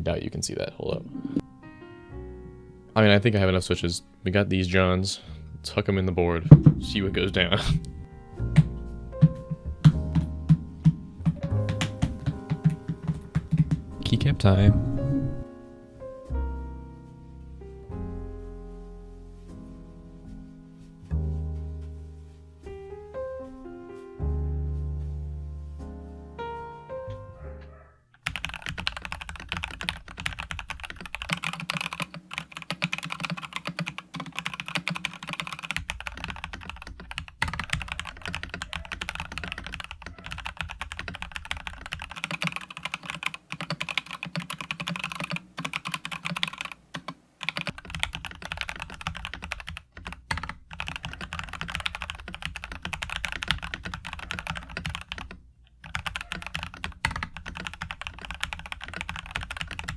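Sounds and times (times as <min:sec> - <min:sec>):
mechanical keyboard typing: 0:28.2 - 0:59.9.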